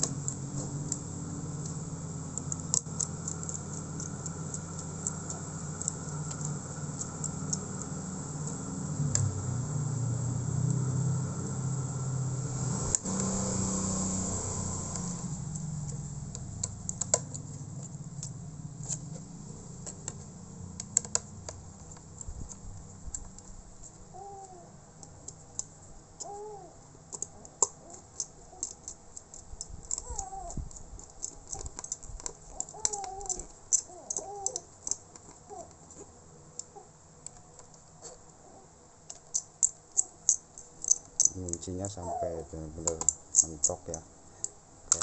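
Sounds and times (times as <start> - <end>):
laptop parts clicking: 0.0 - 9.3, 14.8 - 26.4, 27.0 - 38.2, 39.0 - 41.8, 42.7 - 45.0
engine hum: 0.0 - 23.4.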